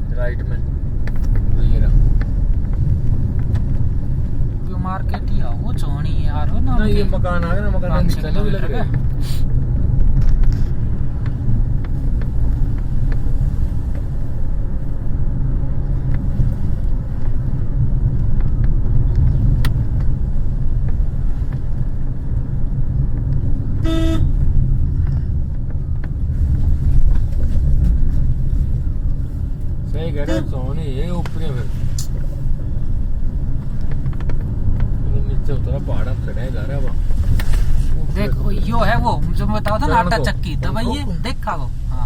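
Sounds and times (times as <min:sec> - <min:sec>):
car engine and road rumble: 0:00.0 - 0:42.0
car horn toot: 0:23.8 - 0:24.4, 0:30.2 - 0:30.6.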